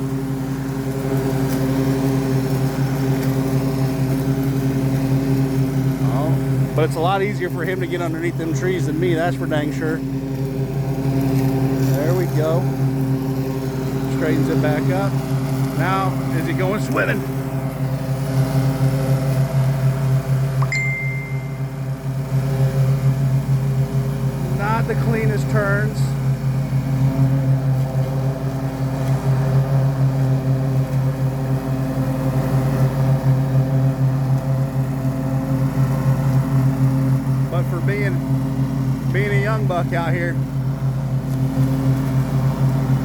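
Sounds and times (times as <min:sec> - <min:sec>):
lawn mower engine running: 0:00.0 - 0:43.0
thin high-pitched tone: 0:20.6 - 0:21.8.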